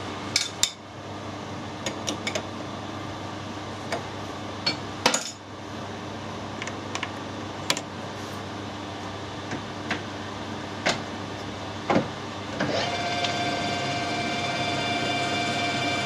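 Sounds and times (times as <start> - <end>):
machine hum: 12.3 - 16.0.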